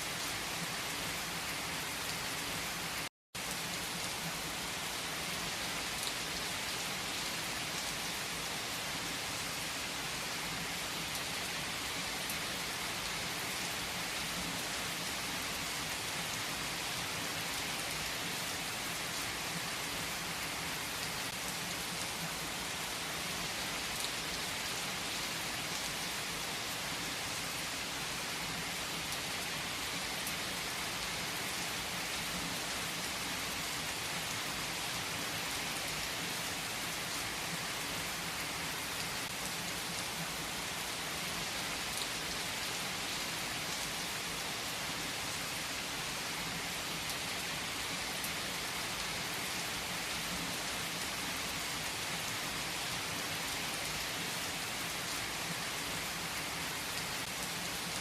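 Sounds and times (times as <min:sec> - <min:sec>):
rain falling on a surface: 0:00.0 - 0:58.0.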